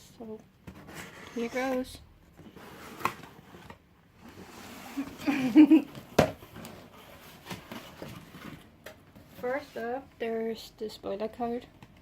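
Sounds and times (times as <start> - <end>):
cardboard packaging rustling: 2.5 - 10.0.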